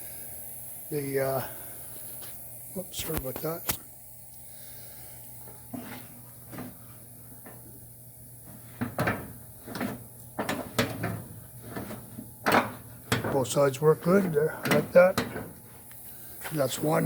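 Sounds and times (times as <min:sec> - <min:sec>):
steady hum: 0:00.0 - 0:17.0
metal hood latch clicks and clunks: 0:08.8 - 0:13.5.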